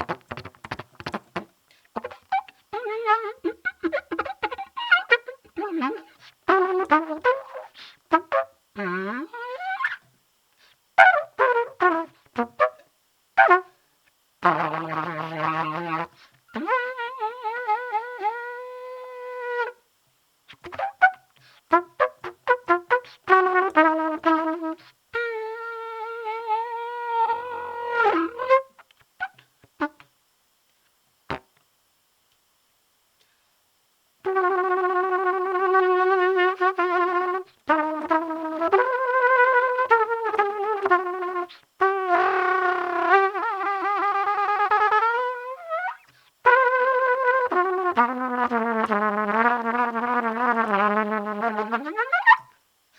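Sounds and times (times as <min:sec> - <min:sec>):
trumpet playing: 0:00.0 - 0:10.0, 0:11.0 - 0:12.8, 0:13.4 - 0:13.7, 0:14.4 - 0:19.8, 0:20.5 - 0:30.0, 0:34.2 - 0:52.6.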